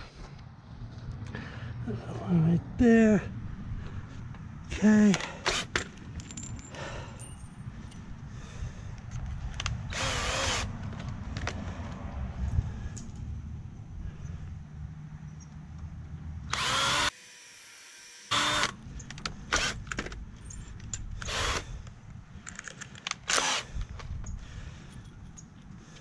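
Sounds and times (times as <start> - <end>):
cordless drill driving screws: 5.2 - 5.9, 9.9 - 10.8, 16.5 - 18.8, 19.5 - 20.1, 21.2 - 21.7, 23.2 - 23.8
small clicks and knocks: 21.8 - 23.2.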